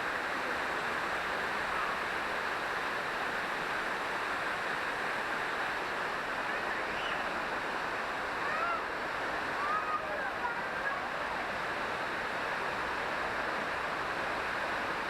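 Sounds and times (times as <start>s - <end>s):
waterfall roaring: 0.0s - 15.0s
faint distant voices: 6.3s - 7.4s, 8.3s - 11.9s.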